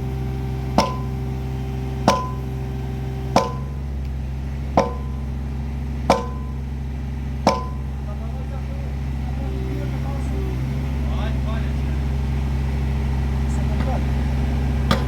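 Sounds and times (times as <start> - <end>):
low engine drone: 0.0 - 15.0
sharp metallic clanks: 0.7 - 1.4, 2.0 - 2.6, 3.3 - 3.9, 4.8 - 5.4, 6.1 - 6.7, 7.4 - 8.0.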